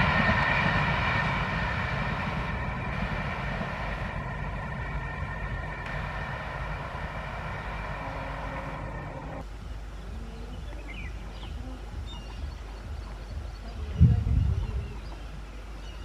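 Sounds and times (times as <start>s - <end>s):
birds chirping: 0.0s - 16.0s
train rumbling over bridge: 0.0s - 16.0s.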